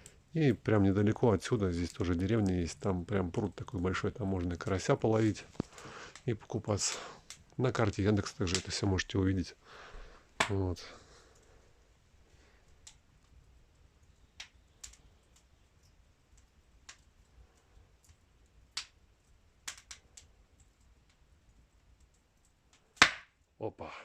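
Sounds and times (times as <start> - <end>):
faint sharp clicks: 5.4 - 7.9, 12.6 - 18.2, 18.8 - 19.0, 19.6 - 23.1.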